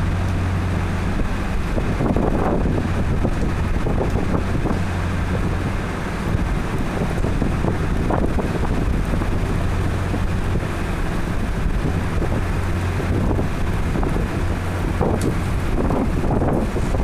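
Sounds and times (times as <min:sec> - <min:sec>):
strong wind blowing: 0:00.0 - 0:17.0
wind buffeting on microphone: 0:00.0 - 0:17.0.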